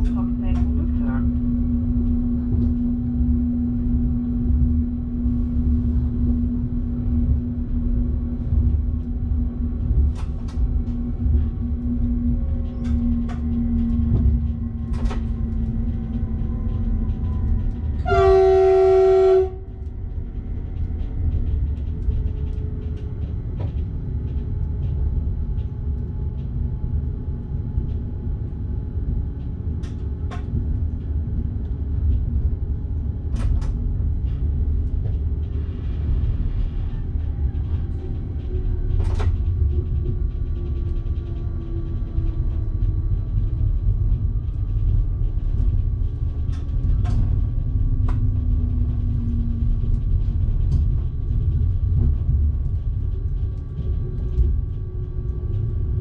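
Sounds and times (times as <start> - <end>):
train running with motor hum: 0.0 - 56.0
train horn blast: 18.0 - 19.7.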